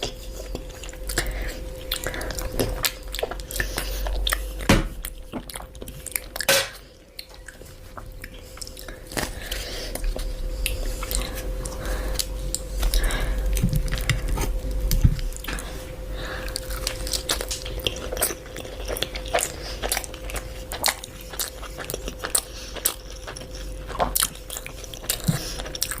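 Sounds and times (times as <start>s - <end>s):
faint hum: 0.0s - 26.0s
person chewing crunchy food: 0.0s - 26.0s.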